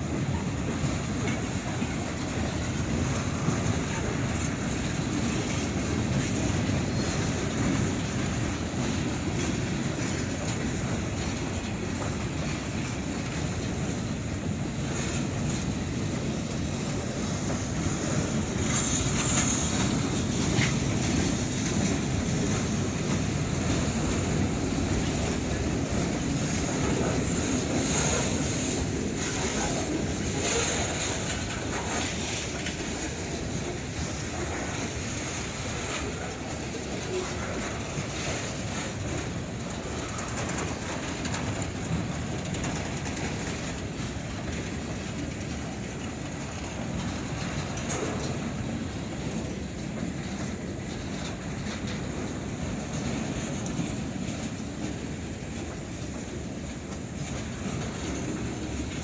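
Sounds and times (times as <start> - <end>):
freight train wheels rumbling: 0.0 - 59.0.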